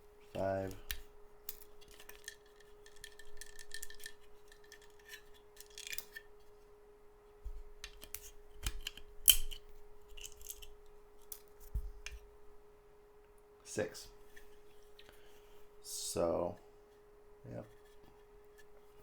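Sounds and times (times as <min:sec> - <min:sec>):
faint steady hum: 0:00.0 - 0:19.0
plastic clicks and cracks: 0:00.9 - 0:06.3, 0:07.8 - 0:11.5.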